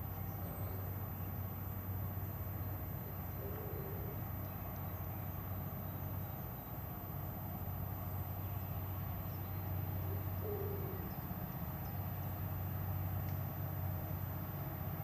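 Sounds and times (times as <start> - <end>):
bird cooing: 3.3 - 4.3, 10.1 - 11.3.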